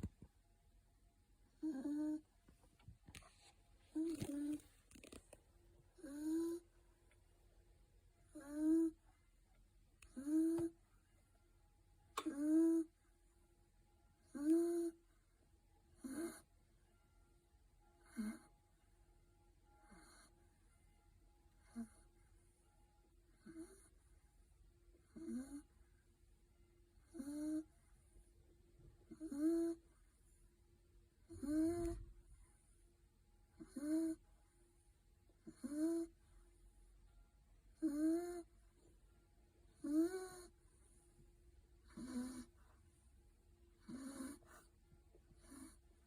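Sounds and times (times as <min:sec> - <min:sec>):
puppy snoring: 0:01.5 - 0:02.4, 0:03.1 - 0:06.8, 0:08.2 - 0:09.1, 0:10.0 - 0:10.8, 0:12.2 - 0:13.0, 0:14.2 - 0:15.1, 0:15.9 - 0:16.6, 0:18.0 - 0:18.6, 0:19.8 - 0:20.4, 0:21.5 - 0:22.2, 0:23.3 - 0:24.1, 0:25.0 - 0:25.9, 0:27.0 - 0:28.0, 0:28.9 - 0:30.3, 0:31.1 - 0:32.6, 0:33.5 - 0:34.3, 0:35.3 - 0:36.4, 0:37.7 - 0:38.9, 0:39.7 - 0:41.0, 0:41.8 - 0:42.8, 0:43.7 - 0:46.0.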